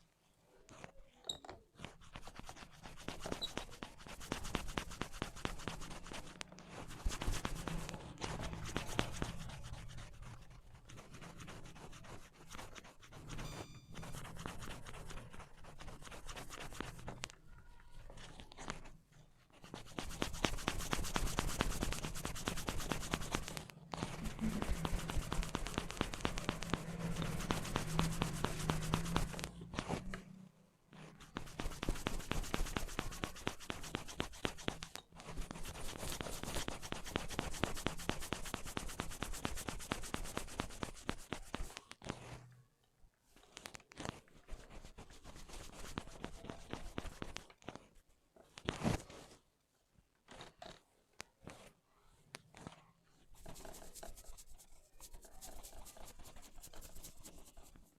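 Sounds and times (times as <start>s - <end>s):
fingers crackling through hair: 2.0s - 13.4s, 19.6s - 42.4s, 53.3s - 57.9s.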